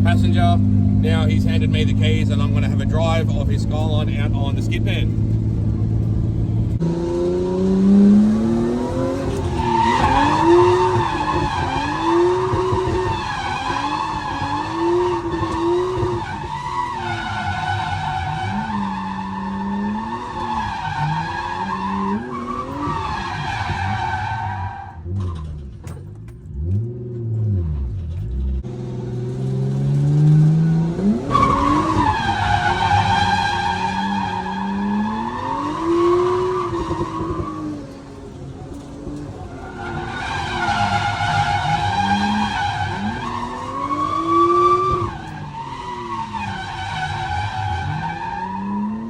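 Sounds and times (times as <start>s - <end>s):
car engine revving: 0.0s - 49.0s
tyres squealing: 30.6s - 49.0s.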